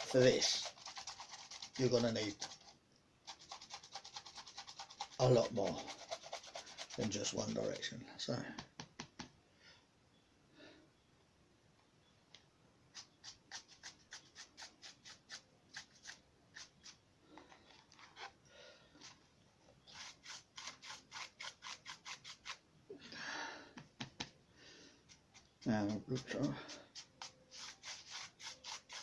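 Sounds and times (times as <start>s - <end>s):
paintbrush scratching on paper: 0.0s - 7.9s, 12.9s - 17.0s, 19.9s - 22.6s, 25.1s - 29.0s.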